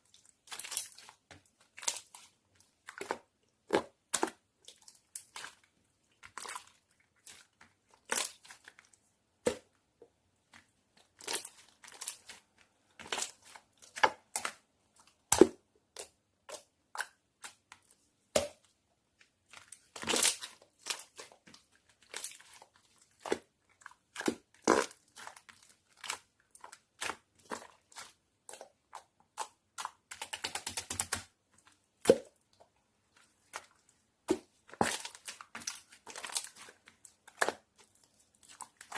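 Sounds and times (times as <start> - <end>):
slime crackling: 33.3 - 38.9.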